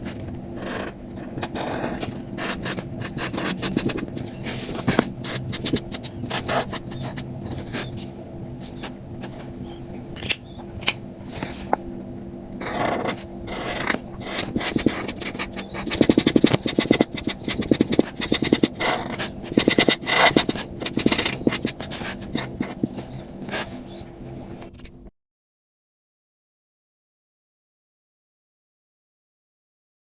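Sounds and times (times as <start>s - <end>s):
faint steady hum: 0.0s - 25.1s
coloring strokes on paper: 0.1s - 8.8s, 12.6s - 24.0s.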